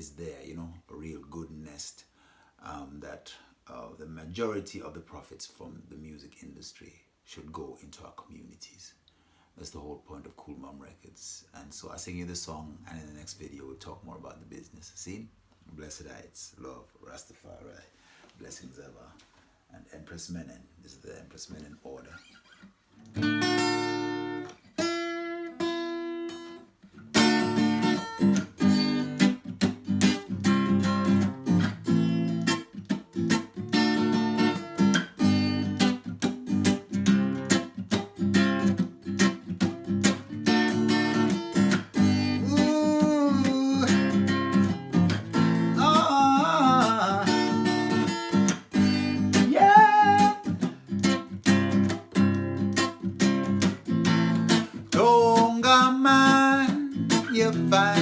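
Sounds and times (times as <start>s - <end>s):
acoustic guitar strumming: 22.2s - 58.0s.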